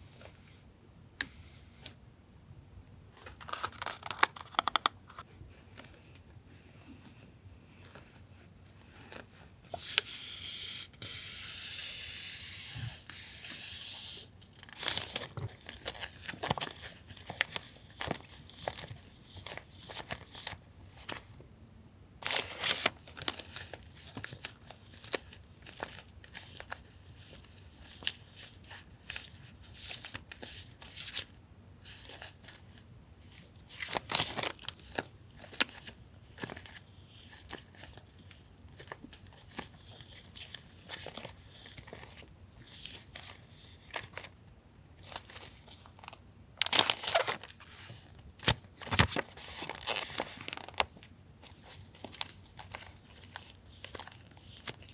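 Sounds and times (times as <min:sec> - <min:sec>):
paper rustling and crinkling: 0:03.1 - 0:06.2, 0:12.7 - 0:21.4, 0:22.2 - 0:44.3, 0:45.0 - 0:54.9.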